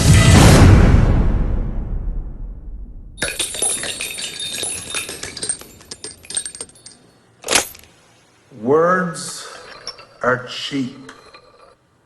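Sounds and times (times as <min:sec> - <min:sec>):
small metal pieces jingling: 0:03.2 - 0:07.9, 0:09.5 - 0:10.3.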